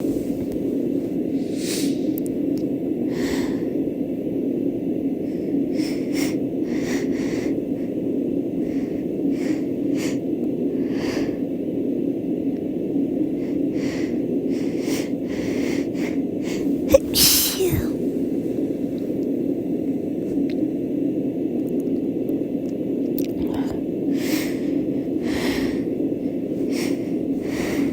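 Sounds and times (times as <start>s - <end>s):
person sniffing: 16.5s - 18.2s.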